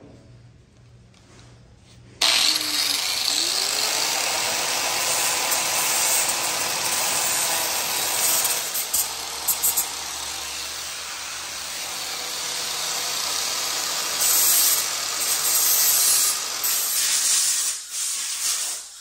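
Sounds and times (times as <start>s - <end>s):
angle grinder grinding metal: 2.2s - 17.2s.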